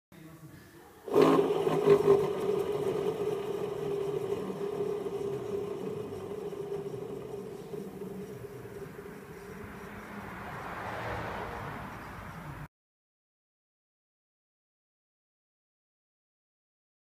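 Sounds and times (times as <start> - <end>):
car mechanical drone: 1.1 - 12.7.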